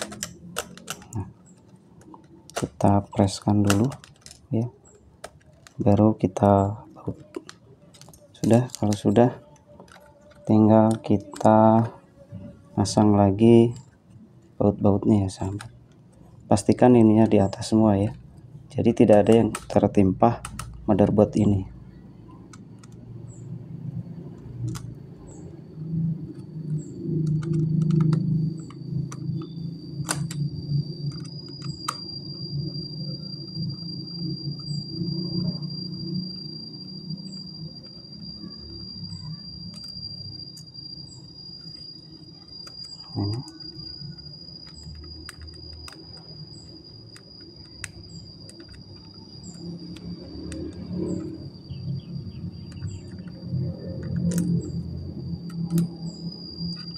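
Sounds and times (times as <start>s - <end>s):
screws and screwdriver tapping: 0.0s - 2.8s
clicks of laptop parts handled: 0.0s - 2.9s, 3.6s - 4.5s
faint high whine: 0.0s - 56.9s
insect trill: 0.0s - 56.9s.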